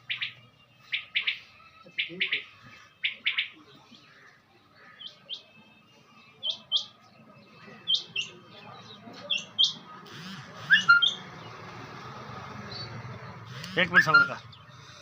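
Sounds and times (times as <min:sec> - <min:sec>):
quail calling: 0:00.1 - 0:03.6, 0:09.3 - 0:11.2, 0:13.5 - 0:15.0.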